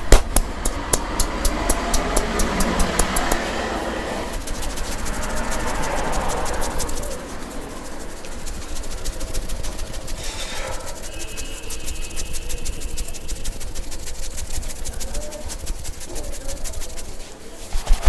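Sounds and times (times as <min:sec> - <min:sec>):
hands tapping and slapping: 0:00.0 - 0:03.6.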